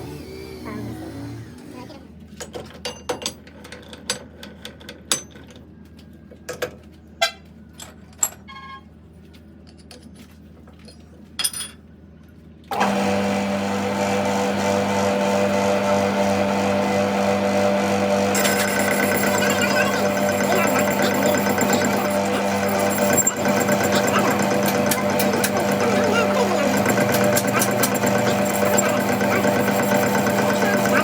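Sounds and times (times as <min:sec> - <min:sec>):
metal clinks and knocks: 0:09.6 - 0:11.8
workshop machine humming: 0:12.7 - 0:31.0.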